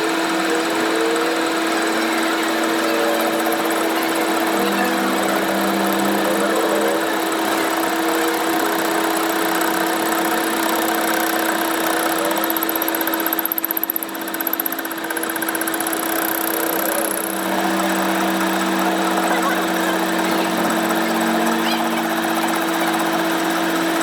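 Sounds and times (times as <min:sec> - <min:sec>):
workshop machine humming and whirring: 0:00.0 - 0:24.0.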